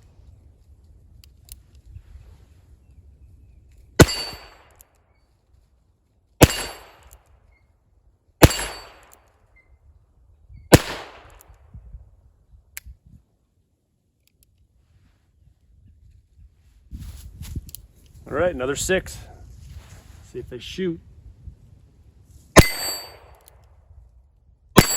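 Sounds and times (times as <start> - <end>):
revolver shots with echo: 6.4 - 7.0, 8.4 - 9.1, 10.8 - 11.4.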